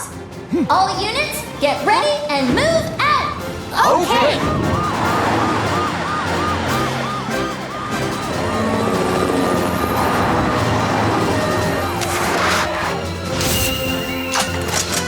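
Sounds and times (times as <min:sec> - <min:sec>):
background music: 0:00.0 - 0:15.0
emergency siren: 0:03.9 - 0:13.1.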